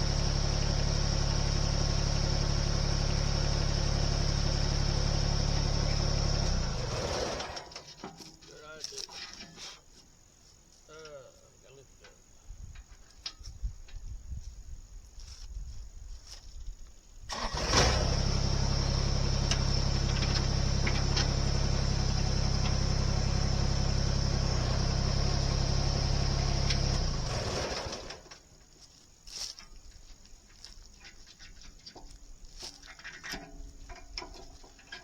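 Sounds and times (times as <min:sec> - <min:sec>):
engine running: 0:00.0 - 0:07.8, 0:17.3 - 0:28.4.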